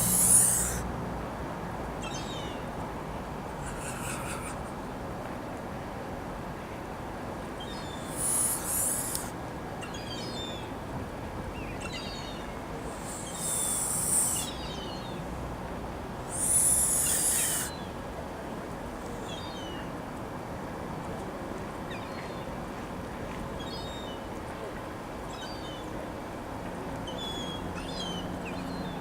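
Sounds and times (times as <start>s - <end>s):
goose hissing: 0.0s - 0.8s, 3.5s - 4.7s, 7.9s - 9.3s, 12.8s - 14.6s, 16.2s - 17.8s
high falling bird calls: 0.0s - 0.8s, 7.8s - 9.3s, 13.0s - 14.9s, 16.3s - 17.8s.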